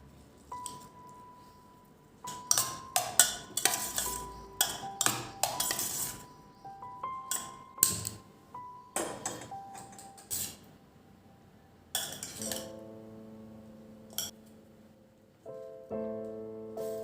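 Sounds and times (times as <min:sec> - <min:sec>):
soft instrumental music: 0:00.1 - 0:10.7, 0:12.3 - 0:17.0
dishes and utensils clinking: 0:02.3 - 0:06.3, 0:07.3 - 0:08.2, 0:09.0 - 0:10.6, 0:12.0 - 0:12.8, 0:14.1 - 0:14.4.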